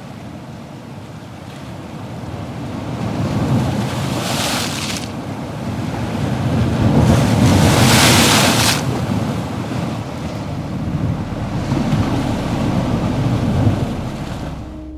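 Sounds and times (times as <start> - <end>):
waves breaking: 3.9 - 5.2, 6.6 - 14.9.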